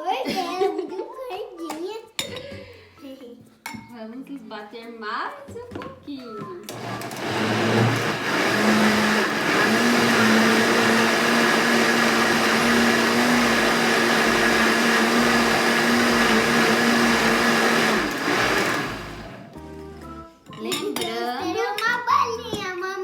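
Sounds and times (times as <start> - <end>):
blender motor running: 6.7 - 19.5.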